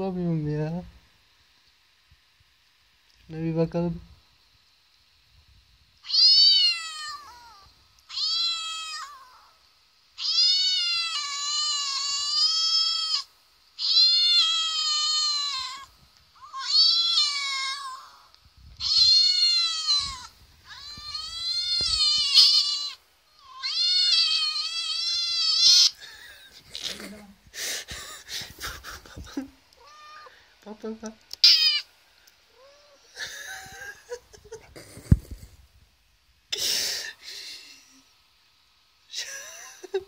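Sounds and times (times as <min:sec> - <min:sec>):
cat meowing: 0:06.0 - 0:09.6, 0:10.2 - 0:26.0, 0:29.7 - 0:30.4, 0:31.4 - 0:31.9.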